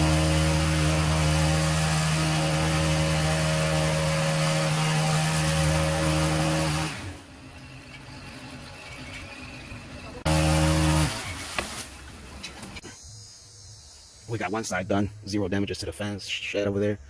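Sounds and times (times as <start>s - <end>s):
chainsaw engine at high throttle: 0.0s - 7.2s, 10.2s - 11.5s.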